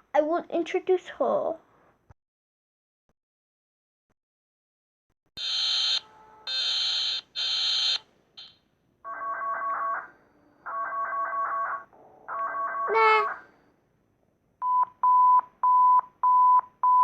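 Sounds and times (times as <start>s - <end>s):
electronic alarm tones: 5.4s - 13.8s.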